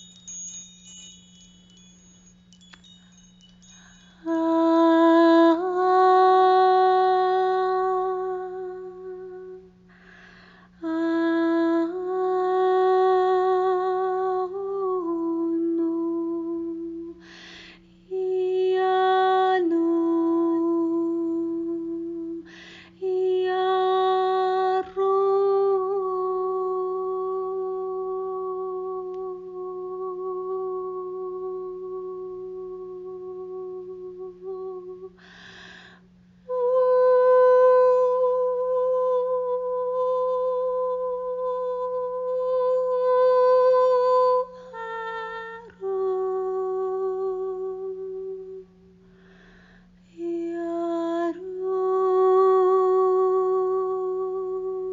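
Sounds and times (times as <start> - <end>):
woman toning sustained notes: 0.0 - 35.7
faint low hum: 0.0 - 54.9
inhalations: 9.9 - 10.7, 35.2 - 36.1, 49.0 - 50.0.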